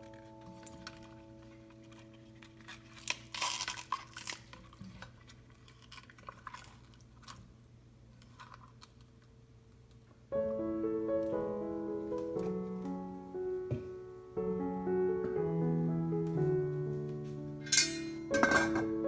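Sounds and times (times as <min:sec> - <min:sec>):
piano music: 0:00.0 - 0:03.8, 0:10.3 - 0:19.0
utensils and dishes clattering: 0:17.6 - 0:19.0.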